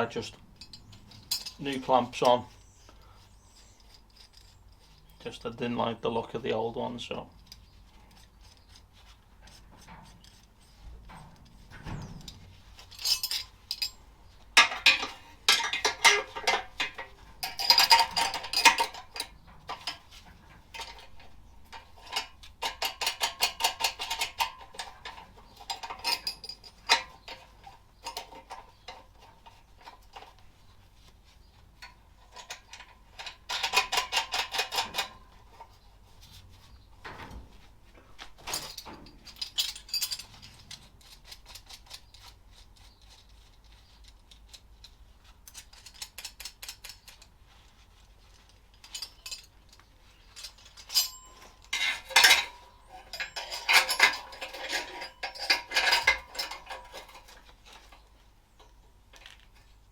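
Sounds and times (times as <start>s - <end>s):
metal clamp clinks: 0.6s - 2.4s, 10.2s - 14.0s, 14.6s - 20.1s, 20.7s - 30.3s, 38.4s - 43.2s, 48.3s - 58.0s.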